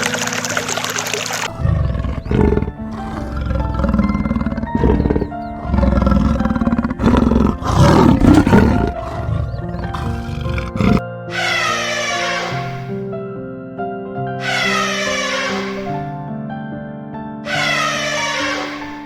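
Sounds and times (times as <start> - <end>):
background music: 0.0 - 19.0
large animal deep rough calls: 1.5 - 13.0, 14.4 - 16.1, 17.5 - 19.0.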